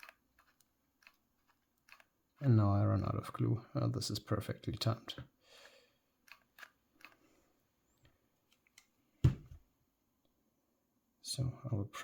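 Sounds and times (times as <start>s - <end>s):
small parts clicking and rustling: 0.0s - 2.2s, 6.2s - 7.4s
dull thump: 9.2s - 9.6s.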